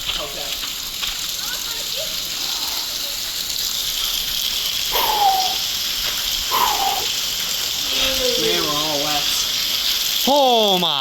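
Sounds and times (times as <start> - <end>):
heavy rain pouring: 0.0 - 11.0
short falling hoot: 4.9 - 5.6.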